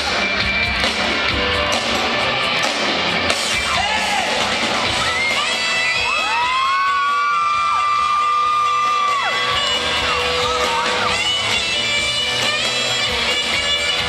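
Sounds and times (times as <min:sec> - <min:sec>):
live band playing: 0:00.0 - 0:14.0
fans screaming: 0:03.5 - 0:14.0.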